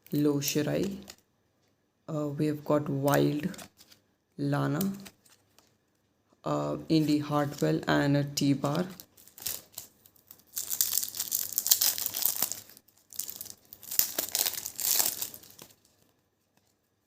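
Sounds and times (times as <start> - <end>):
plastic wrapper crinkling and tearing: 0.0 - 1.2, 4.7 - 5.7, 8.6 - 16.8.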